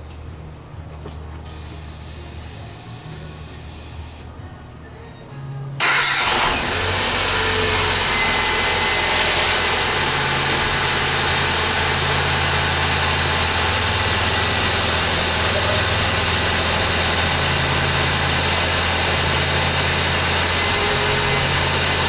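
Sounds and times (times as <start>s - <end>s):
car engine starting and idling: 1.5s - 4.3s, 5.8s - 22.0s
fast high engine ticking: 5.8s - 22.0s.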